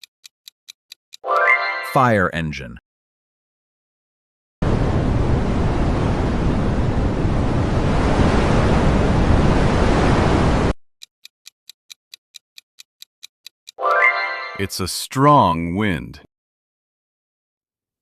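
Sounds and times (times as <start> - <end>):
countdown clock ticking: 0.0 - 2.7, 11.0 - 16.2
strong wind rushing: 4.6 - 10.8.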